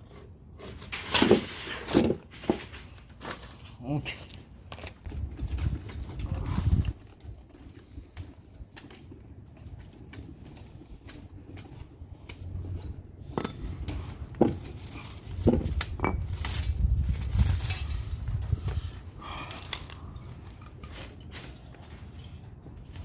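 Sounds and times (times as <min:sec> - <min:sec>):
metal clinking and knocking: 0:14.3 - 0:16.8.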